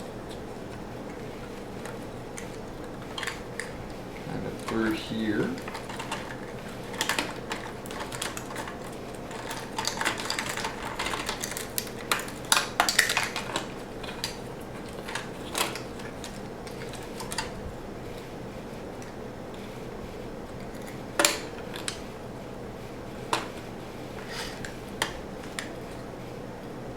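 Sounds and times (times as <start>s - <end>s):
faint steady hum: 0.0s - 26.9s
plastic parts clicking and rattling: 0.2s - 17.6s.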